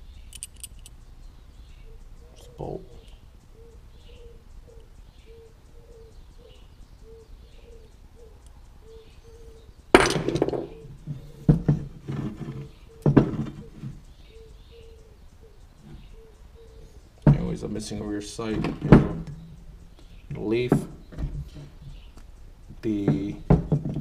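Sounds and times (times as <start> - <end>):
sharp metal clanks: 9.9 - 10.8
metal gun parts clattering: 10.0 - 10.8.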